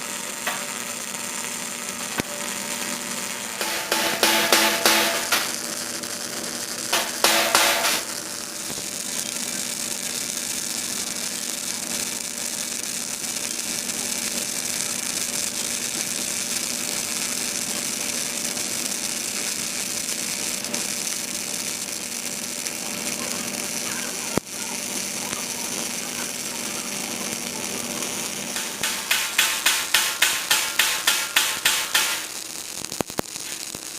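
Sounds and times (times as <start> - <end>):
steady hum: 0.0 - 8.7, 26.8 - 32.5
welding arc crackling and hissing: 0.0 - 33.9
loud knocks: 3.6 - 5.6, 7.0 - 8.1, 28.6 - 32.3.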